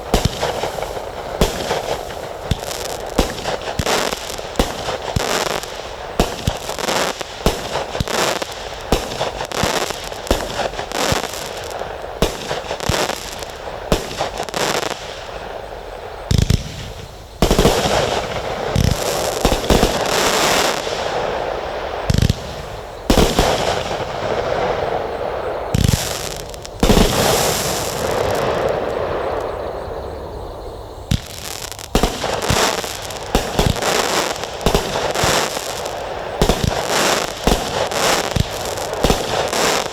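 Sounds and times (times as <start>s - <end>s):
fireworks crackling: 0.0s - 39.9s
fireworks sharp reports: 0.0s - 39.9s
fireworks deep thumps: 31.1s - 39.9s.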